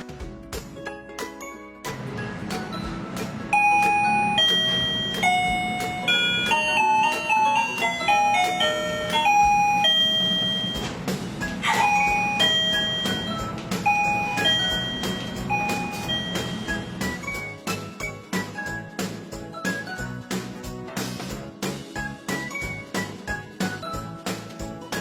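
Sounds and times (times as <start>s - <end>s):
electronic doorbell chime melody: 3.5s - 11.0s, 11.7s - 17.6s.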